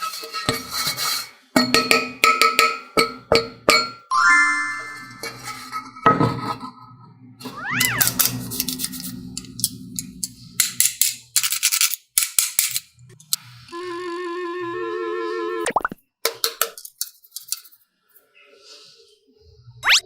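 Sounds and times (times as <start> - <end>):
cartoon cat meowing: 7.4 - 8.1.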